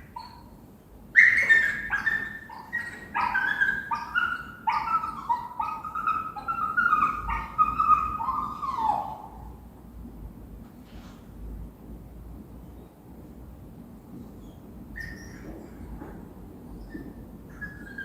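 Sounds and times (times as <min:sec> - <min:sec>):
dog whining and whimpering: 0:00.0 - 0:00.6, 0:01.2 - 0:09.6, 0:15.0 - 0:18.0.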